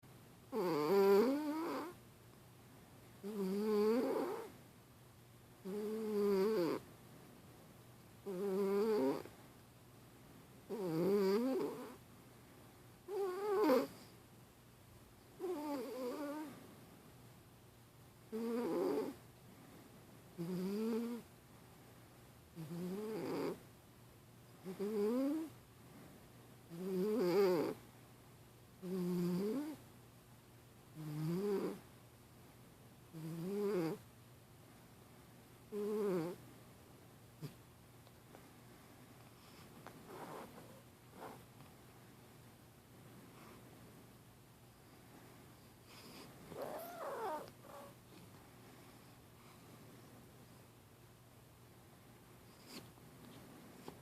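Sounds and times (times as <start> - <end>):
cat snoring: 0.5 - 2.0, 3.2 - 4.5, 5.6 - 6.8, 8.2 - 9.3, 10.7 - 12.0, 13.1 - 14.1, 15.4 - 16.6, 18.3 - 19.2, 20.4 - 21.3, 22.6 - 23.6, 24.6 - 25.5, 26.7 - 27.8, 28.8 - 29.8, 31.0 - 31.8, 33.1 - 34.0, 35.7 - 36.4, 39.4 - 41.4, 45.8 - 48.0, 52.5 - 52.8.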